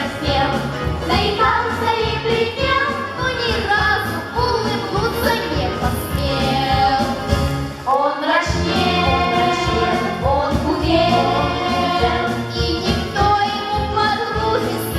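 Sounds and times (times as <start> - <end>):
children singing in unison: 8.0 - 12.5.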